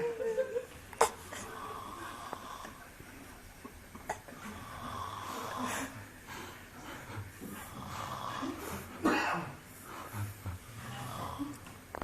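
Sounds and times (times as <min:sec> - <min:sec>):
person snoring: 0:01.1 - 0:02.9, 0:04.4 - 0:06.1, 0:07.6 - 0:08.8, 0:10.1 - 0:11.6.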